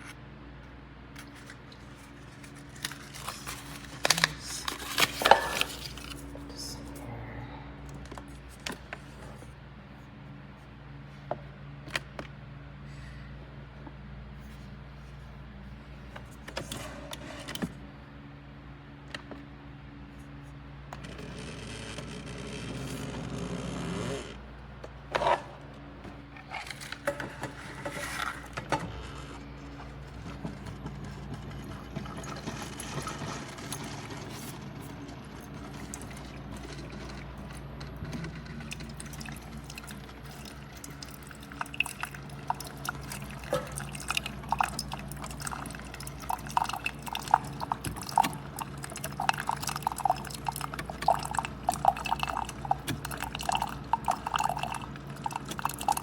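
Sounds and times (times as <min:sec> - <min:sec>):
coffee maker pump hum: 0:00.0 - 0:07.1, 0:07.8 - 0:56.0
coffee dripping into cup: 0:35.4 - 0:56.0.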